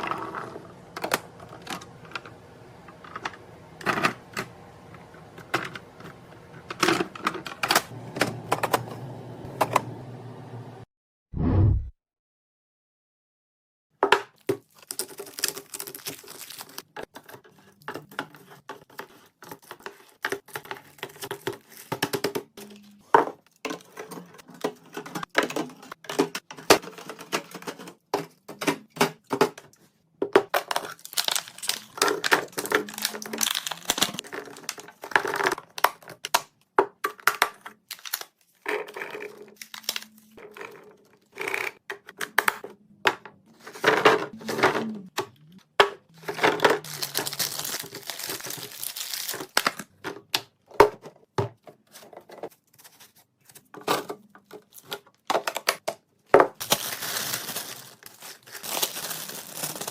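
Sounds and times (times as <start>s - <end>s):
plastic packaging crinkling: 14.6s - 17.0s, 30.6s - 36.1s, 37.8s - 38.6s, 39.2s - 40.4s, 46.2s - 50.0s, 56.6s - 59.9s.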